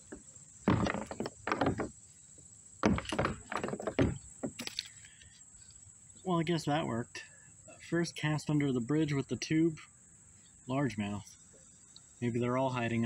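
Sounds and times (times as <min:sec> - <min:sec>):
knocks and thumps in plastic kayak: 0:00.0 - 0:02.0, 0:02.8 - 0:04.8.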